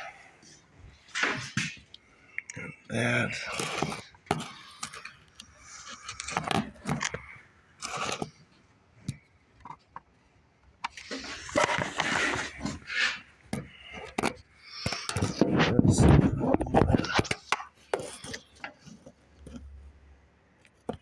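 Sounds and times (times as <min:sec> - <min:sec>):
scraping and rubbing: 0:02.9 - 0:08.6, 0:10.8 - 0:19.9.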